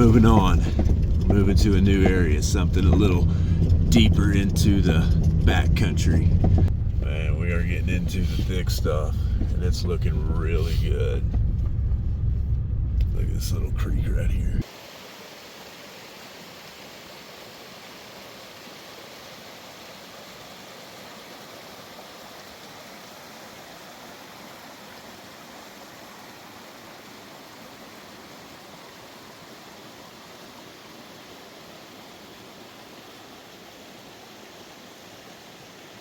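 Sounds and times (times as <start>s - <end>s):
creek water flowing: 0.0s - 36.0s.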